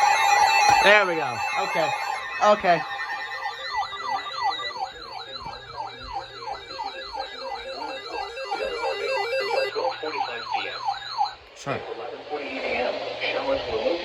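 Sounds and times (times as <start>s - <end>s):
yelping electronic alert tone: 0.0s - 9.8s.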